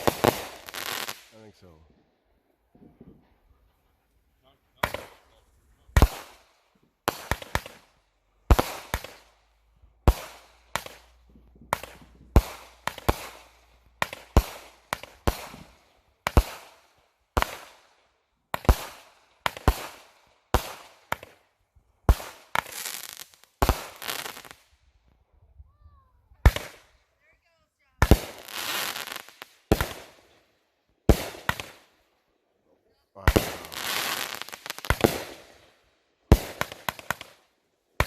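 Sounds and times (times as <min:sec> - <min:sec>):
fireworks bangs: 0:00.0 - 0:01.7, 0:02.7 - 0:03.6, 0:04.8 - 0:07.9, 0:08.5 - 0:09.3, 0:10.0 - 0:17.8, 0:28.0 - 0:30.3, 0:31.0 - 0:31.9, 0:33.2 - 0:35.6, 0:36.3 - 0:37.4.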